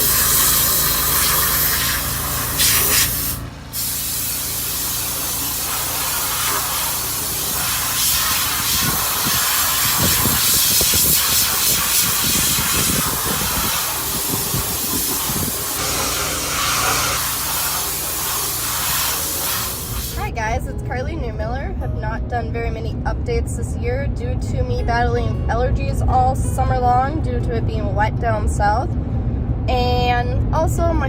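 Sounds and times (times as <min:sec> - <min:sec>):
loud rushing hiss: 0:00.0 - 0:20.3
low engine drone: 0:00.0 - 0:31.0.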